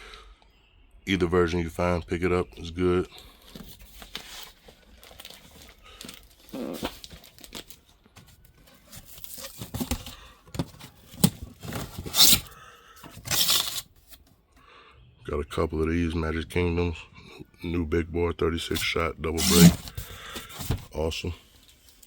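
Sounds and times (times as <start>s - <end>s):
rustling and crinkling: 3.2s - 14.3s, 18.7s - 22.0s
harsh scrape: 18.8s - 20.8s.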